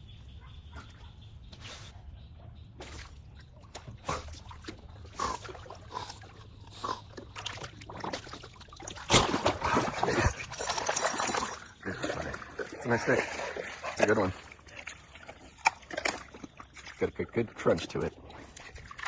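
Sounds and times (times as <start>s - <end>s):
dog splashing in water: 7.1s - 17.0s.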